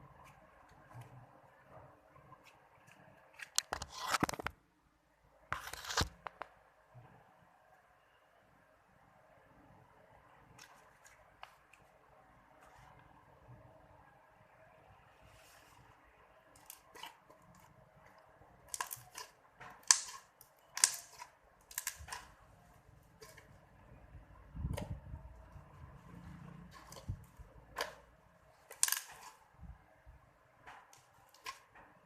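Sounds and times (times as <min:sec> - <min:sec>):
slime popping and clicking: 0:18.7 - 0:20.2.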